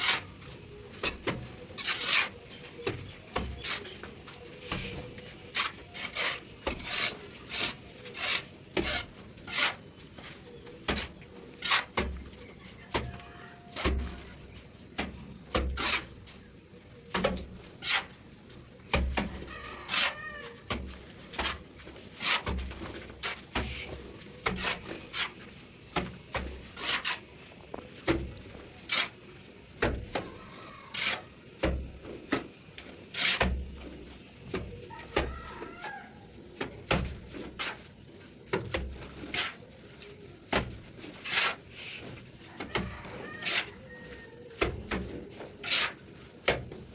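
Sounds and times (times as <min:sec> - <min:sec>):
trowel slapping mortar: 0:01.0 - 0:03.9, 0:04.7 - 0:09.8, 0:10.9 - 0:12.2, 0:19.9 - 0:27.3, 0:28.0 - 0:29.2, 0:30.9 - 0:32.4, 0:33.1 - 0:33.6, 0:38.5 - 0:39.6, 0:40.5 - 0:42.0, 0:44.6 - 0:46.9
faint bird calls: 0:23.6 - 0:31.7, 0:33.0 - 0:40.6, 0:41.2 - 0:46.4.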